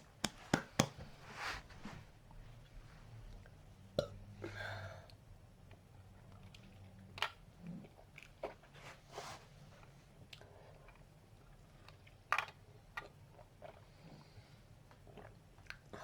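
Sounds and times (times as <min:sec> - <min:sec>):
soft mouth sounds: 0:03.3 - 0:05.2.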